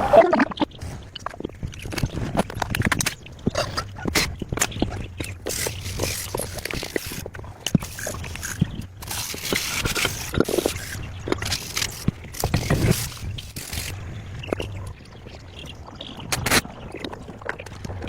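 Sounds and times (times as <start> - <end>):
steady low hum: 0.0 - 16.0
scraping: 1.8 - 14.9.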